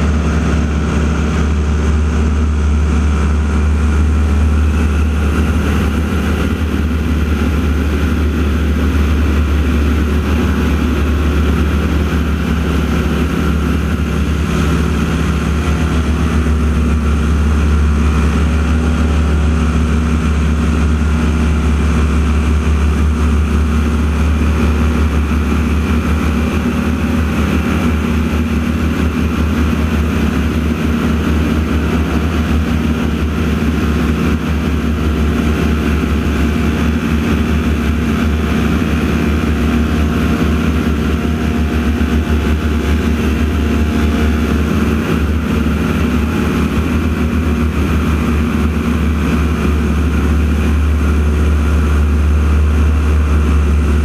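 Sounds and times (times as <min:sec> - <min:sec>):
propeller aircraft engine drone: 0:00.0 - 0:54.0.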